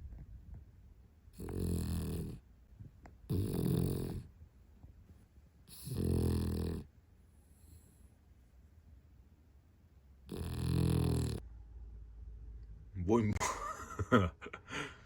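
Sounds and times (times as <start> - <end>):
dog snoring: 1.3 - 2.5, 3.3 - 4.3, 5.7 - 6.9, 10.2 - 11.4.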